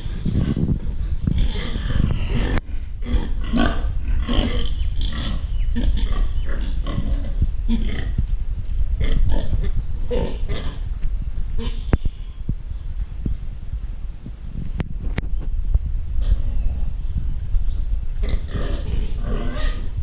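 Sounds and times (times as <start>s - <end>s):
low rumble: 0.0s - 20.0s
pigs grunting: 1.3s - 8.2s, 9.0s - 10.9s, 11.6s - 12.4s, 18.2s - 20.0s.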